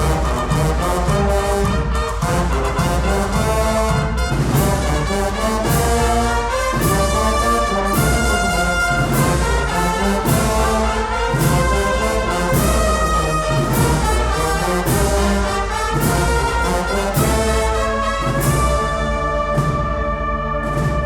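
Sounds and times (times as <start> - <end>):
brass band processional march: 0.0 - 21.0
percussion strokes: 0.0 - 21.0.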